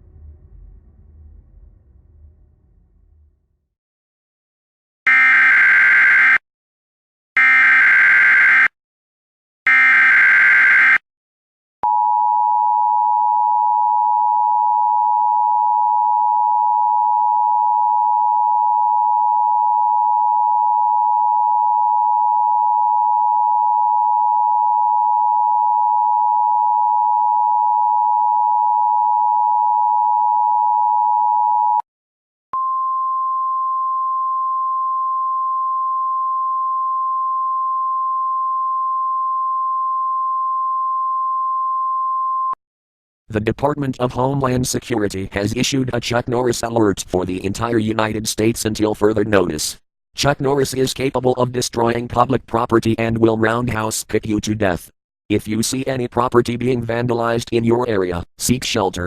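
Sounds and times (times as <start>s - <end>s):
steady tone: 0.0s - 3.6s.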